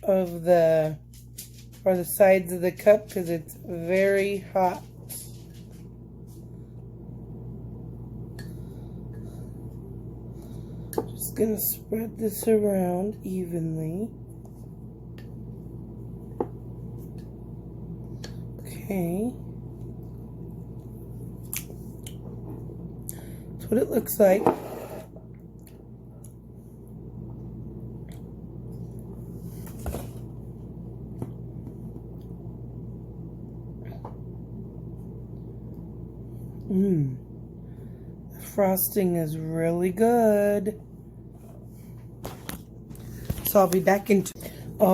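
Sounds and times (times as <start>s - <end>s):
low hum: 0.0s - 44.9s.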